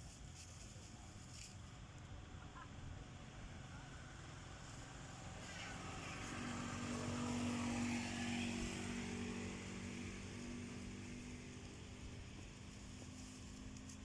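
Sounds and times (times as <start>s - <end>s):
vehicle engine passing: 3.3s - 14.0s.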